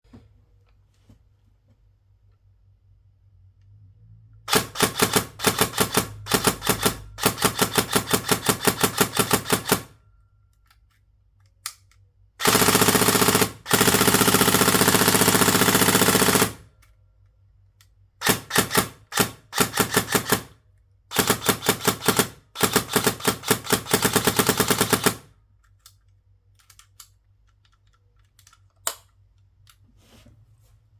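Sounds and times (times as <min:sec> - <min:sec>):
airsoft gun firing bursts: 0:04.5 - 0:09.9, 0:12.4 - 0:16.7, 0:18.2 - 0:25.3.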